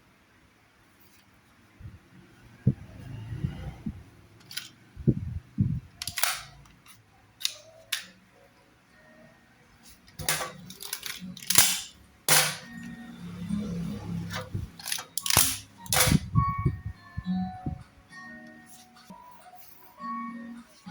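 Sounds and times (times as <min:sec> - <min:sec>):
toy pistol clacks and snaps: 0:06.0 - 0:06.8, 0:10.2 - 0:12.7, 0:14.8 - 0:16.2.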